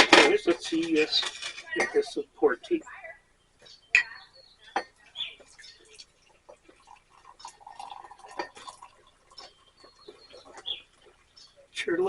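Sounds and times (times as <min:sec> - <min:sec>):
liquid dripping: 0:04.7 - 0:11.7
tea pouring into a mug: 0:05.4 - 0:11.3
light clinks: 0:06.8 - 0:10.8.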